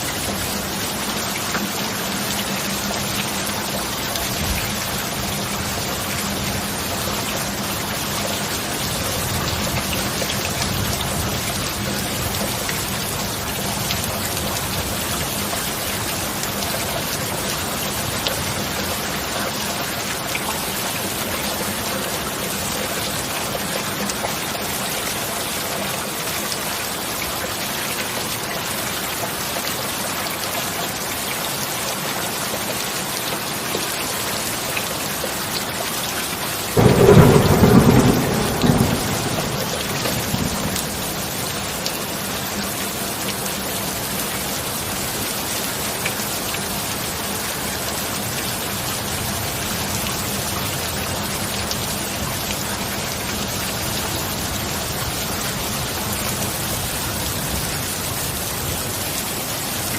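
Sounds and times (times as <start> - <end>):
heavy rain: 0.0 - 59.9
thunder clap rumbling: 36.8 - 41.7.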